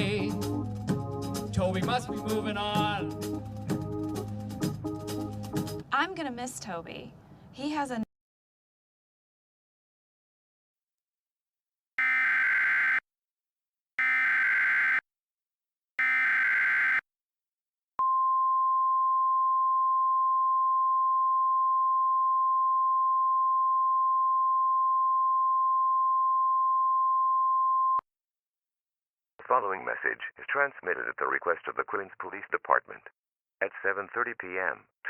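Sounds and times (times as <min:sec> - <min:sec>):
raspy digital data tones: 0:12.0 - 0:13.0, 0:14.0 - 0:15.0, 0:16.0 - 0:17.0
steady attention tone: 0:12.0 - 0:13.0, 0:14.0 - 0:15.0, 0:16.0 - 0:17.0.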